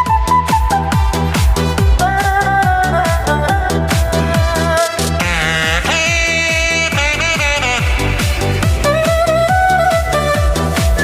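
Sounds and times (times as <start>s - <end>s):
electronic dance music: 0.0s - 11.0s.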